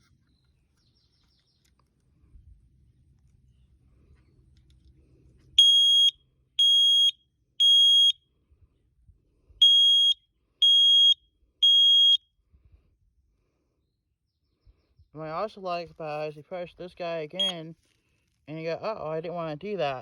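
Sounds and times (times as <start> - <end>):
smoke alarm beeping: 5.6 - 8.2, 9.6 - 12.2.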